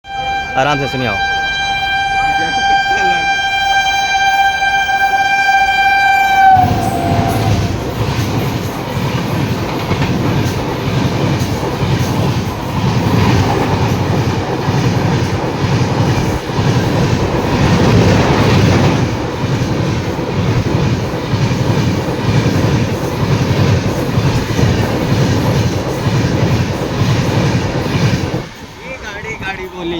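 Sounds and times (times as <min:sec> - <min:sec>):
train horn long note: 0:00.0 - 0:08.0
train rushing past: 0:00.1 - 0:29.9
wheels clattering over rail joints: 0:06.9 - 0:29.7.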